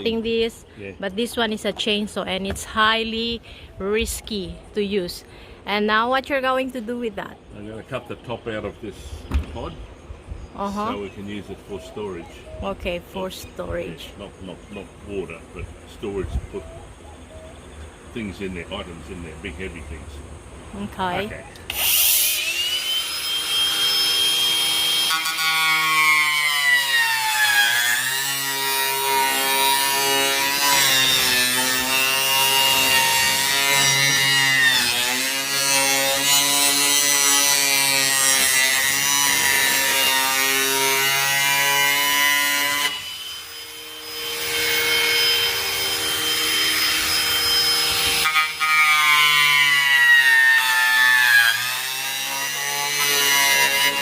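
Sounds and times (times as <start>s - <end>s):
angle grinder cutting wood: 10.6s - 16.6s, 21.0s - 54.0s.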